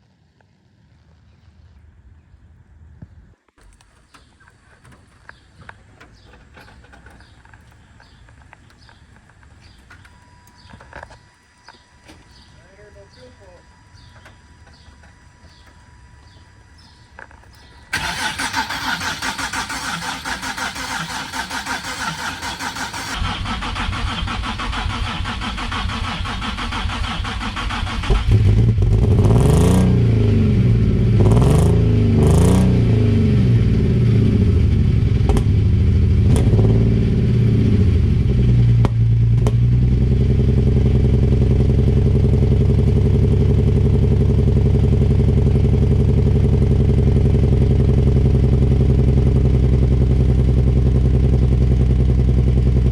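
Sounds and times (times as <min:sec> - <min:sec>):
engine starter cranking: 0:03.6 - 0:12.5, 0:13.2 - 0:28.7
car engine revving and idling: 0:04.9 - 0:52.9.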